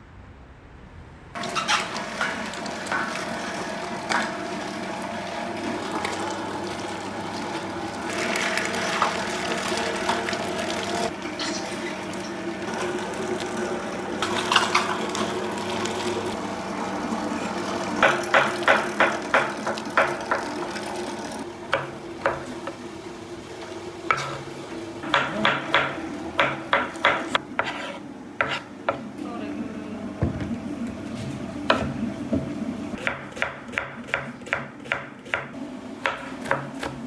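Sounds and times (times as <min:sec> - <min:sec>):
steady mechanical hum: 0:00.1 - 0:37.0
kitchen utensils knocking: 0:25.0 - 0:27.4.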